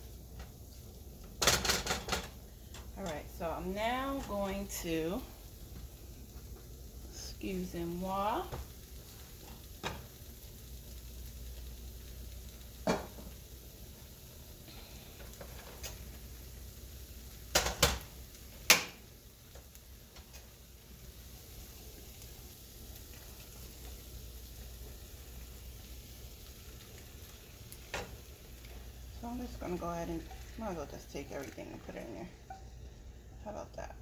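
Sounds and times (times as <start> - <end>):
food sizzling in a pan: 0.0 - 34.0.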